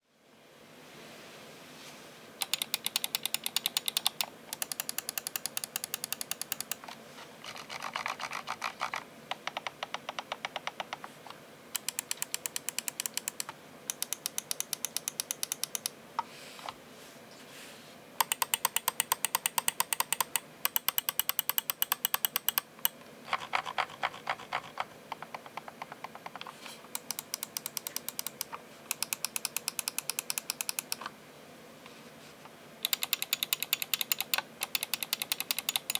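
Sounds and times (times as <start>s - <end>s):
mouse buttons clicking rapidly: 2.4s - 6.9s, 7.5s - 11.1s, 11.8s - 16.0s, 18.2s - 31.1s, 32.8s - 35.9s.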